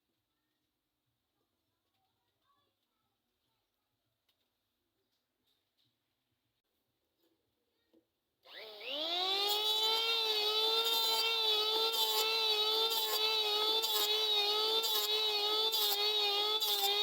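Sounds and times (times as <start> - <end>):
electric grinder motor whining: 8.5 - 17.0.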